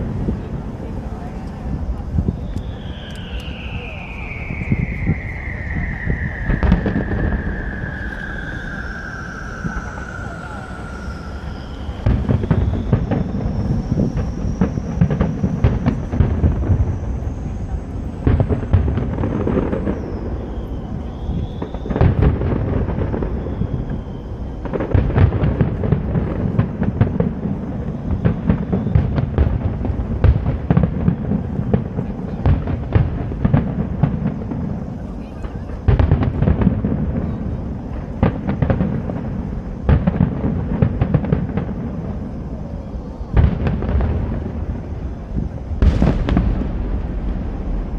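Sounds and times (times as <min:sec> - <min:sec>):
firework whistles: 0:00.0 - 0:47.9
fireworks booms and crackles: 0:00.0 - 0:47.9.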